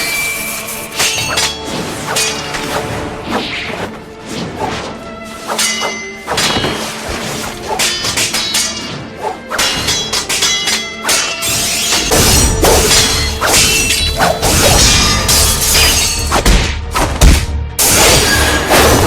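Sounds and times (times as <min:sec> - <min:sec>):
sword clashes ringing: 0:00.0 - 0:01.6, 0:05.6 - 0:06.8, 0:07.7 - 0:09.0, 0:09.6 - 0:16.4
fight hits and thuds: 0:16.3 - 0:17.6.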